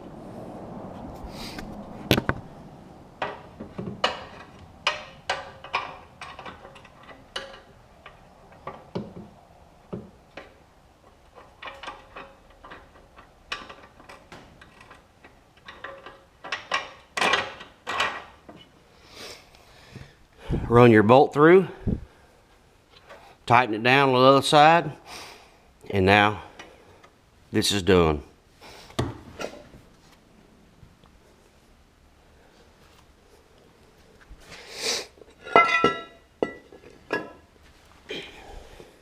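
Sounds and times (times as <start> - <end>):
metal hardware clicks and knocks: 3.2 - 9.3, 9.9 - 18.7, 35.4 - 37.4.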